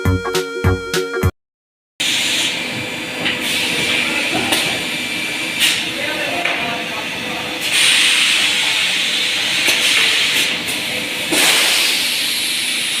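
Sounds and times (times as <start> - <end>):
machine hissing: 3.4 - 13.0.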